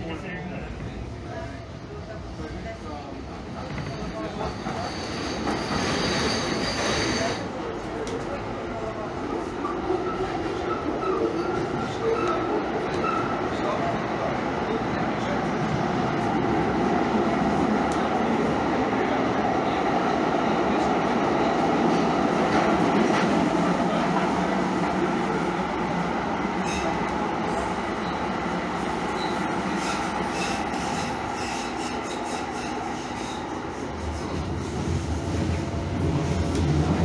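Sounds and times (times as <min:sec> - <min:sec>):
light rail train rumbling: 0:00.0 - 0:37.0
clicks of train on track: 0:03.4 - 0:08.3, 0:11.0 - 0:13.3, 0:17.8 - 0:18.1, 0:36.4 - 0:36.8.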